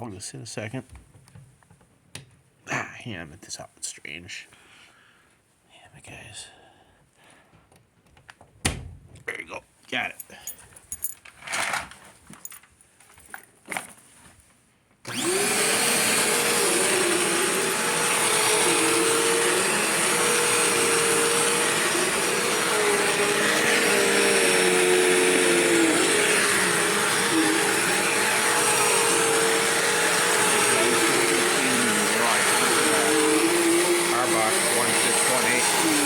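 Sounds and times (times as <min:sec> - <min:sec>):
vacuum cleaner running on carpet: 0:15.1 - 0:36.0.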